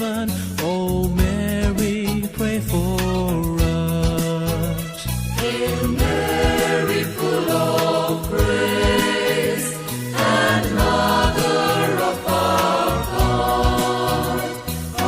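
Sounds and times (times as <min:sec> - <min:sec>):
bass and beat: 0:00.0 - 0:15.0
choir singing devotional song: 0:05.4 - 0:15.0.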